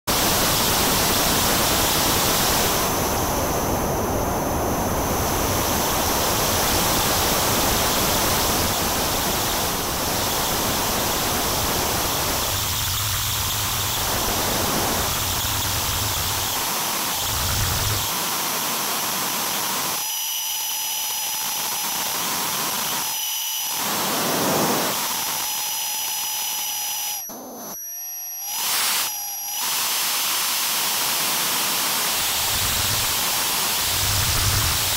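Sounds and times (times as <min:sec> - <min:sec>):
synthesized hiss: 0:23.8 - 0:25.0, 0:32.2 - 0:34.9.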